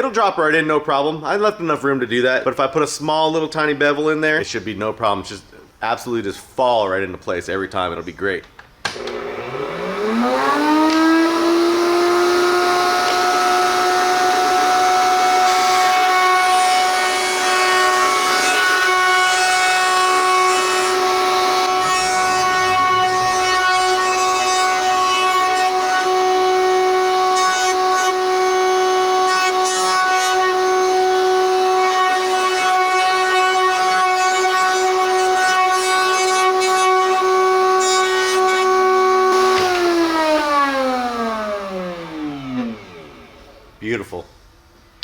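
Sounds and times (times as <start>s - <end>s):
electric router whining: 8.8s - 43.8s.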